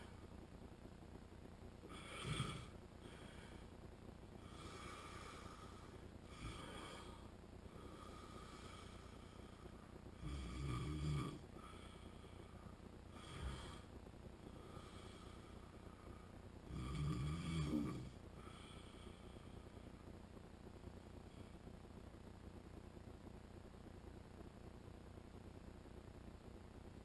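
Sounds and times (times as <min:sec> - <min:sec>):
man snoring: 0:01.9 - 0:03.5, 0:04.4 - 0:09.4, 0:10.2 - 0:12.4, 0:13.1 - 0:13.9, 0:16.7 - 0:19.2.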